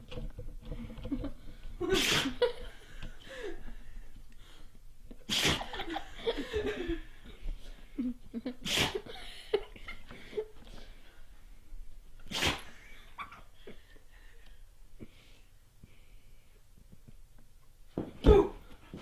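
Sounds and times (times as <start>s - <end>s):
dog sneezing: 1.9s - 2.4s, 5.3s - 5.8s, 8.6s - 9.1s, 12.3s - 12.8s.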